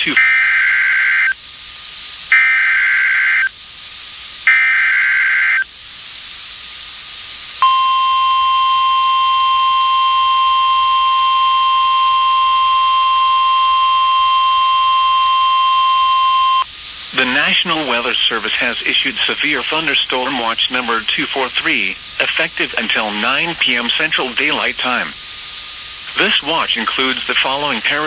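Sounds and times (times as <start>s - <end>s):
alert data bursts: 0.0s - 1.4s, 2.3s - 3.5s, 4.4s - 5.7s, 7.6s - 28.0s
steady alert tone: 7.6s - 16.6s.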